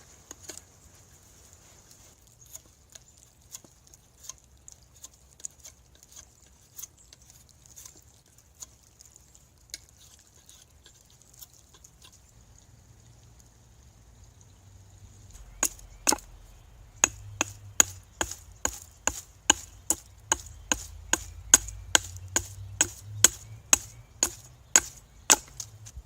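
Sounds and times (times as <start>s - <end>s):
faint high hiss: 0.0s - 2.2s.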